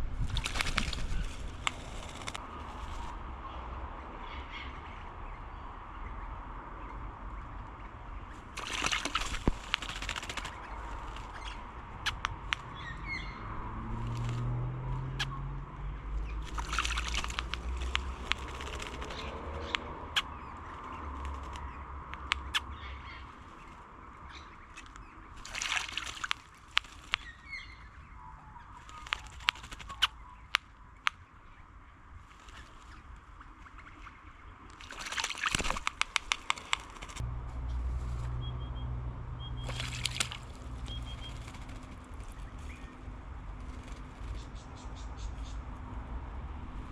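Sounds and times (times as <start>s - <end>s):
birds splashing in a bird bath: 0.0s - 3.6s, 7.3s - 46.9s
water drips and clicks: 8.6s - 10.6s, 16.2s - 20.0s, 21.0s - 22.6s, 24.8s - 27.4s, 34.7s - 37.2s, 39.6s - 40.5s
low drone: 36.5s - 46.9s
faint bird chirps: 37.8s - 43.1s.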